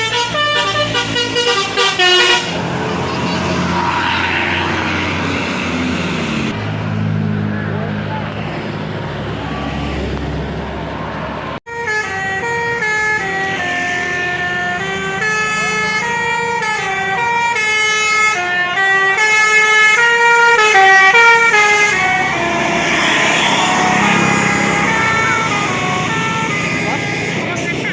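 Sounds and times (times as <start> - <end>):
air horn playing melody: 0.0 - 4.6, 11.7 - 27.9
traffic rumble: 0.0 - 27.9.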